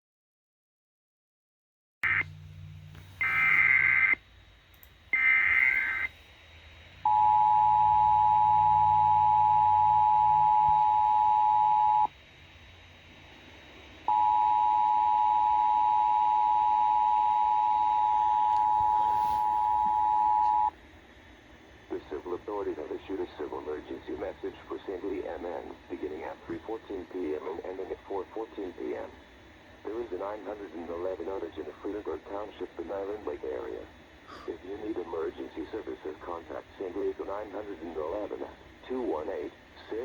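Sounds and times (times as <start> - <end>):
raspy digital data bursts: 3.2 - 4.2, 5.2 - 6.1
two-tone attention signal: 7.1 - 12.1.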